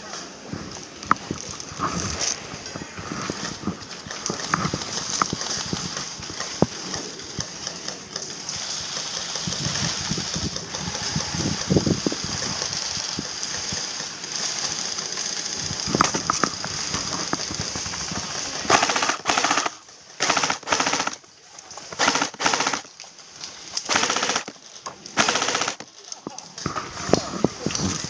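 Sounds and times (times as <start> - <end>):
steady hiss: 0.0 - 28.0
airsoft gun firing bursts: 18.6 - 22.9, 23.8 - 24.6, 25.2 - 26.0.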